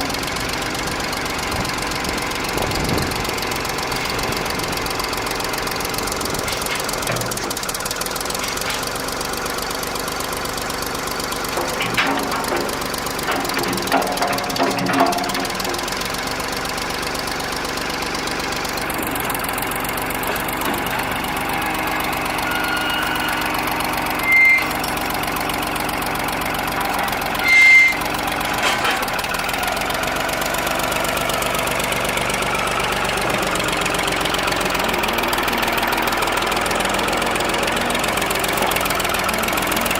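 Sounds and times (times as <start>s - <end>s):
backhoe engine idling: 0.0s - 39.9s
high-pitched squeals: 22.2s - 24.9s, 26.9s - 28.2s.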